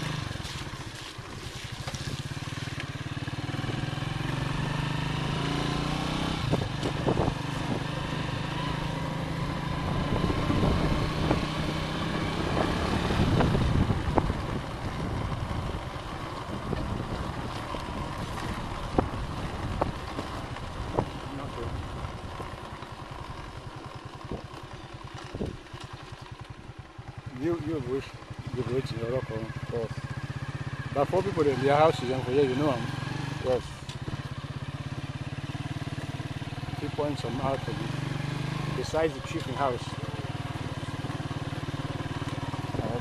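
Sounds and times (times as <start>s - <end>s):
motorcycle engine running: 0.0s - 43.0s
road noise: 0.0s - 43.0s
wind noise: 6.3s - 8.1s, 9.6s - 22.4s.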